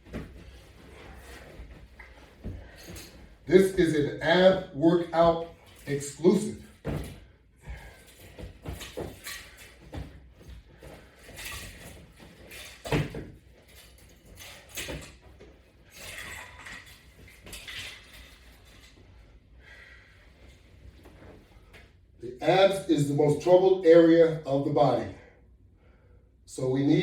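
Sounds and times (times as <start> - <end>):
exercise gear clinking and rustling: 0.0 - 19.5.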